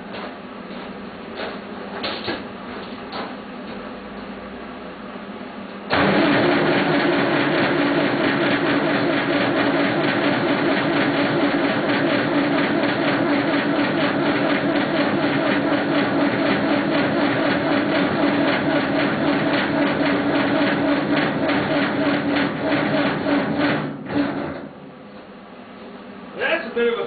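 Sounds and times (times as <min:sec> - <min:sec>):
diesel engine cranking: 0:05.9 - 0:24.7.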